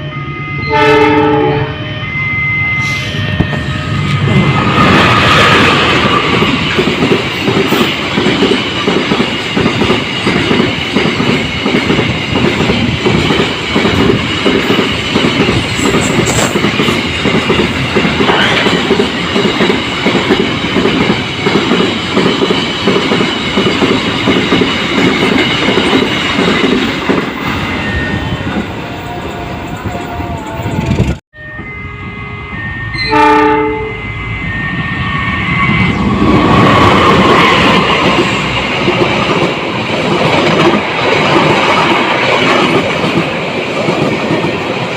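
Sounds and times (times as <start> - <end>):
train wheels clattering: 4.5 - 27.8.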